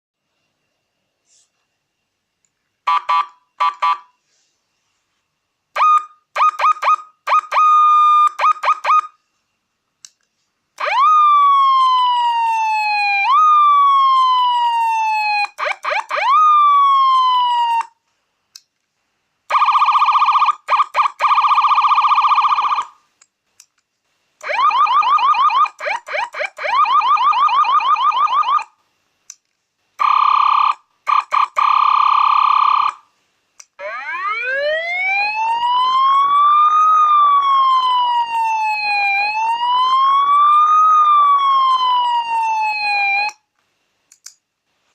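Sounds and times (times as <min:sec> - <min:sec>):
electronic motorcycle siren: 0:05.8 - 0:09.2, 0:10.8 - 0:17.9, 0:24.4 - 0:28.7, 0:33.8 - 0:43.4.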